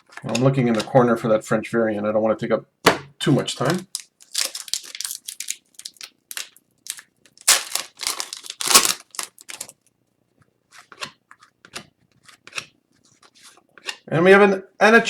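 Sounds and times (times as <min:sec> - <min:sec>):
plastic wrapper tearing and crinkling: 0:03.6 - 0:09.8
cards being handled: 0:03.7 - 0:09.7.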